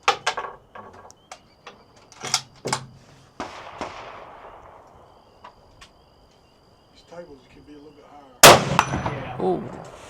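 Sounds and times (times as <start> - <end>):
gunshots echoing: 3.4 - 5.2, 8.4 - 10.0.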